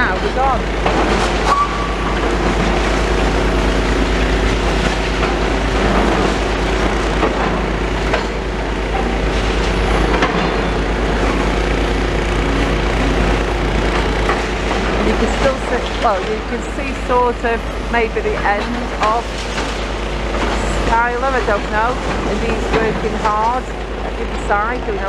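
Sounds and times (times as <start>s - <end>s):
rubble knocking and clanking: 0.0s - 16.4s
demolition excavators running: 0.0s - 25.0s.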